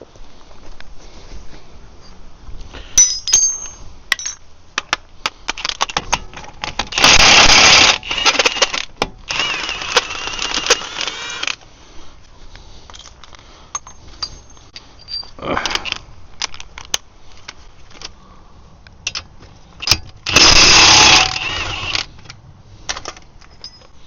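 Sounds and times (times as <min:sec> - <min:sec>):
metal tools clinking: 0:03.0 - 0:04.4, 0:12.9 - 0:15.4, 0:23.4 - 0:24.0.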